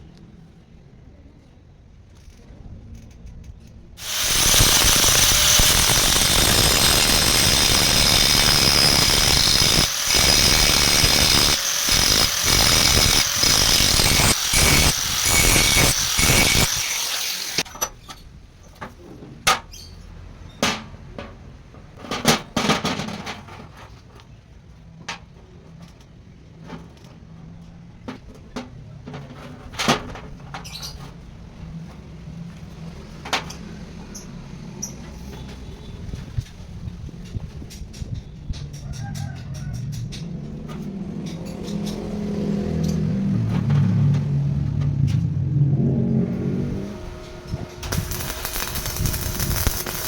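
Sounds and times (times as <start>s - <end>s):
power tool whining: 4.0s - 17.7s, 46.5s - 50.0s.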